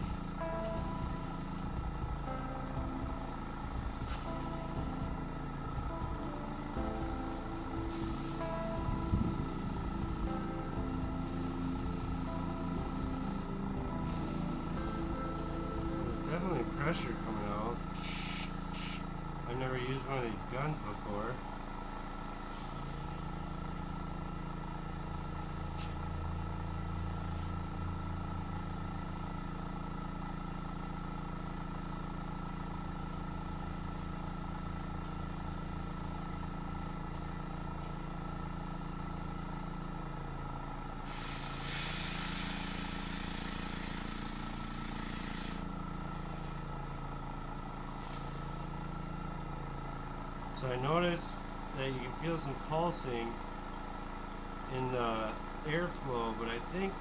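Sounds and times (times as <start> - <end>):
airbrush compressor humming: 0.0 - 57.0
air hissing: 16.2 - 19.2, 41.0 - 46.7.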